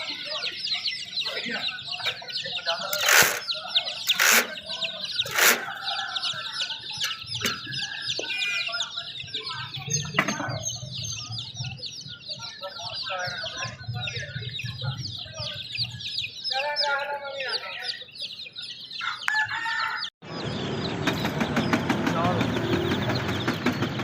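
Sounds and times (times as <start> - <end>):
hens clucking: 0.0 - 9.3
chicks peeping: 0.0 - 24.0.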